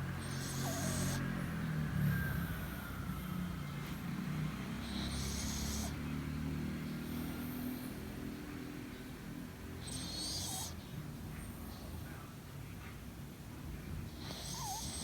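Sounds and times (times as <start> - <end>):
dog snoring: 0.0 - 4.0, 4.6 - 6.3, 9.8 - 10.8, 14.1 - 15.0
breathy hisses: 0.2 - 3.4.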